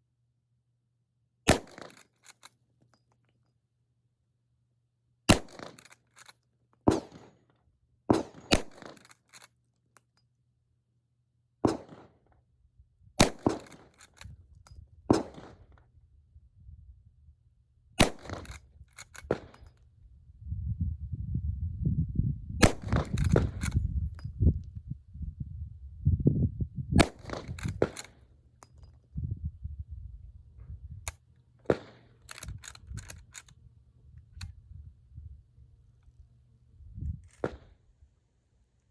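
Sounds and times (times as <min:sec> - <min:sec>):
rifle shots: 0:01.5 - 0:02.0, 0:05.3 - 0:05.9, 0:06.9 - 0:07.3, 0:08.1 - 0:09.1, 0:11.7 - 0:12.1, 0:13.2 - 0:14.0, 0:15.1 - 0:15.6, 0:18.0 - 0:19.6, 0:22.6 - 0:23.8, 0:27.0 - 0:28.2, 0:31.7 - 0:33.2
rifle lever clacks: 0:01.5 - 0:03.2, 0:05.3 - 0:07.0, 0:08.5 - 0:10.1, 0:13.2 - 0:14.4, 0:18.0 - 0:19.7, 0:22.6 - 0:24.3, 0:27.0 - 0:28.9, 0:31.1 - 0:33.6.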